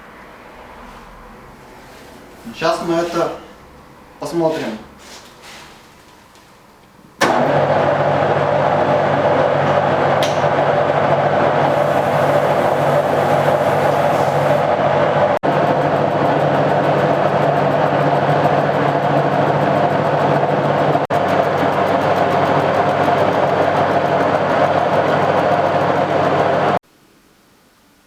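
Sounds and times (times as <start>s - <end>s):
low machine hum: 7.2s - 26.8s
milling cutter whirring: 7.2s - 26.8s.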